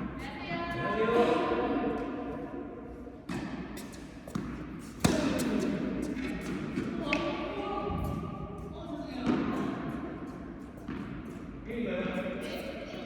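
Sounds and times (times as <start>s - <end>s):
tennis ball knocks: 4.3s - 5.8s.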